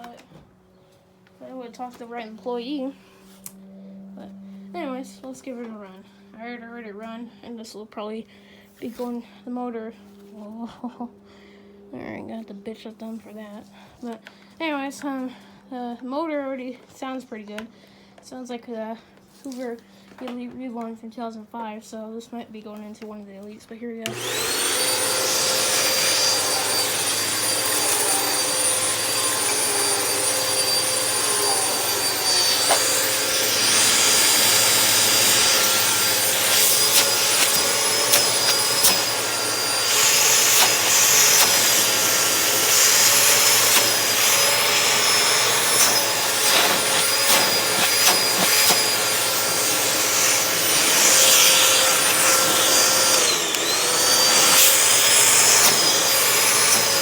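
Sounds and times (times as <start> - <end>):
vacuum cleaner motor whine: 24.0 - 57.0.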